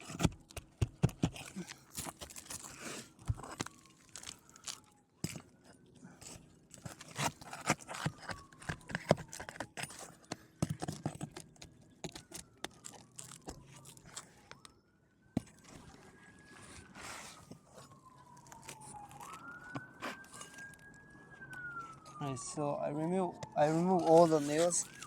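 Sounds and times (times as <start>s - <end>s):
distant siren wailing: 2.4s - 25.0s.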